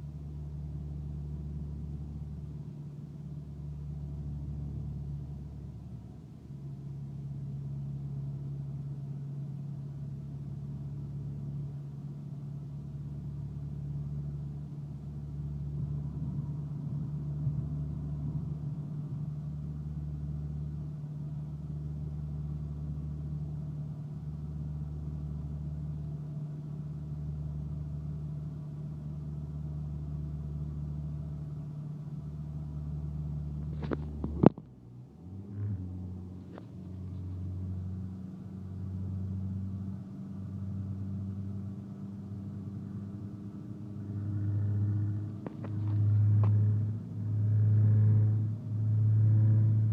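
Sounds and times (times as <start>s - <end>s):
car engine running: 13.4s - 49.9s.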